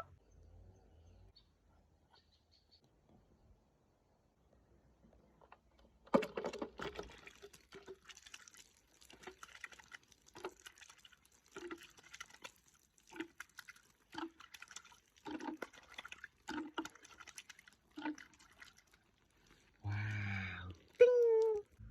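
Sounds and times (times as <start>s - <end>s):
water splashing: 6.4s - 21.8s.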